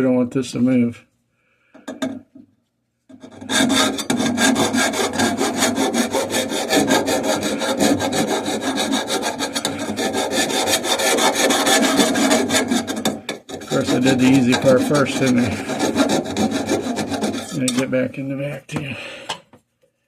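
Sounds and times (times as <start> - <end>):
hand file scraping pipe: 3.1 - 18.2.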